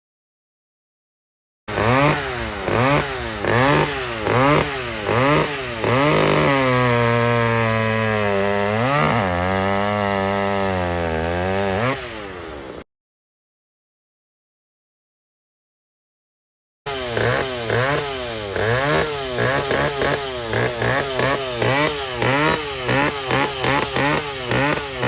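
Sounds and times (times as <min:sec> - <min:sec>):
two-stroke chainsaw revving: 0:01.7 - 0:12.9, 0:16.9 - 0:25.0.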